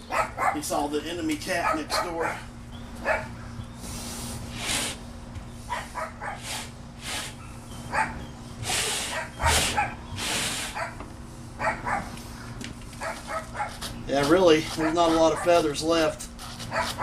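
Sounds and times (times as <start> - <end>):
dog barking: 0.0 - 0.6, 1.6 - 3.3, 5.7 - 6.4, 7.9 - 8.2, 9.1 - 10.0, 11.6 - 12.1, 13.0 - 13.8, 14.8 - 15.6, 16.7 - 17.0
brush scratching over cloth: 13.0 - 15.6.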